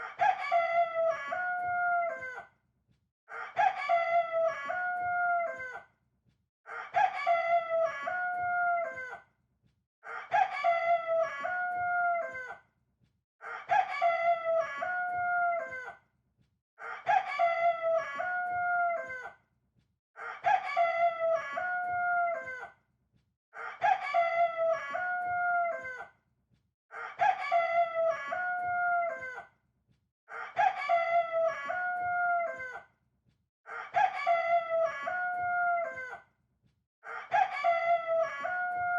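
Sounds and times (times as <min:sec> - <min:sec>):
rooster crowing: 0:00.0 - 0:02.4, 0:03.4 - 0:05.8, 0:06.7 - 0:09.2, 0:10.1 - 0:12.5, 0:13.5 - 0:15.9, 0:16.9 - 0:19.3, 0:20.2 - 0:22.7, 0:23.6 - 0:26.1, 0:27.0 - 0:29.5, 0:30.3 - 0:32.8, 0:33.7 - 0:36.2, 0:37.1 - 0:38.9.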